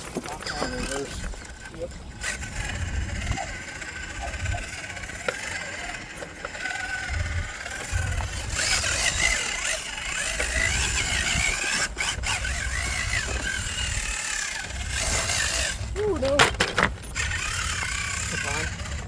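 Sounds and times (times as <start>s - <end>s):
electric motor whining: 0.0s - 19.0s
wind on microphone: 0.7s - 5.2s, 6.8s - 16.6s.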